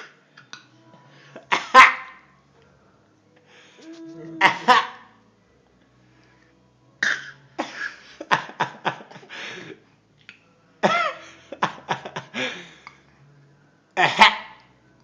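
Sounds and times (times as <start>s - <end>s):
baby coughing: 4.2s - 4.9s.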